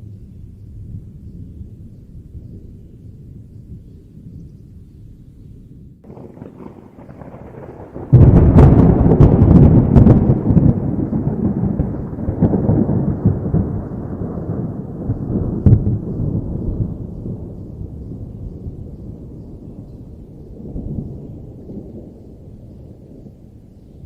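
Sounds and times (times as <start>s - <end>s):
thunder rumbling: 0.0s - 24.0s
thunder crack: 6.0s - 19.6s.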